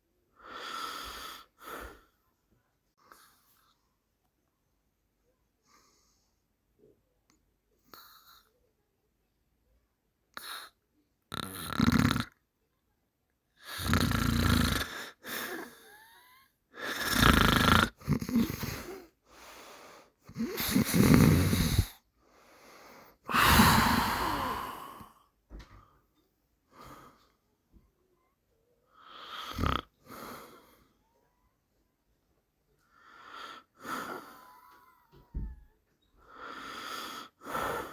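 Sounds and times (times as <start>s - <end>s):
loud deep snoring: 11.3s - 12.3s, 13.7s - 15.2s, 16.9s - 18.9s, 20.3s - 22.0s, 23.3s - 24.9s, 29.1s - 29.9s
soft out-breaths: 18.7s - 20.9s, 21.5s - 29.2s.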